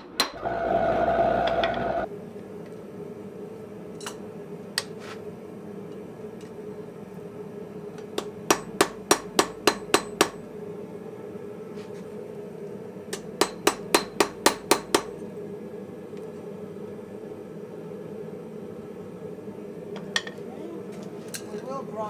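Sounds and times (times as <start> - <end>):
steady hum: 0.3 - 2.3
hammer blows on anvil: 13.2 - 15.2.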